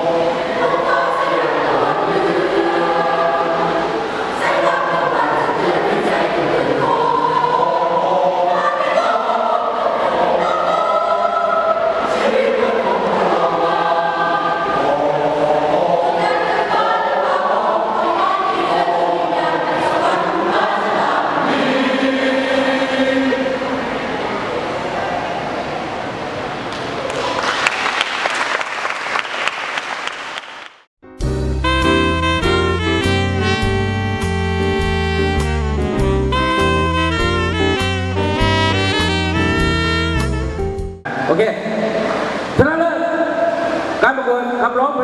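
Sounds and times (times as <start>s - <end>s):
choir singing in harmony: 0.0s - 25.8s, 31.6s - 40.2s.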